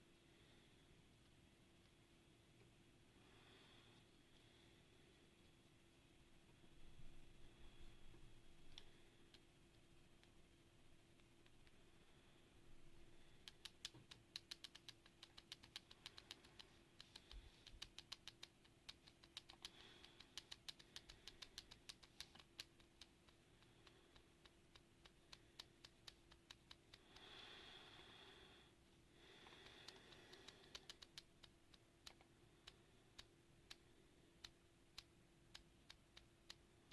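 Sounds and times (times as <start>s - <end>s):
mechanical keyboard typing: 13.4s - 23.2s, 29.8s - 32.2s.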